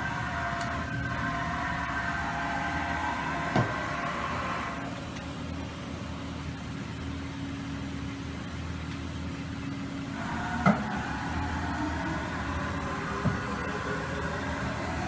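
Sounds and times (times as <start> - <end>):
high-pitched machine whine: 0.0 - 8.1, 9.5 - 15.0
machining center mechanical hum: 0.0 - 15.0.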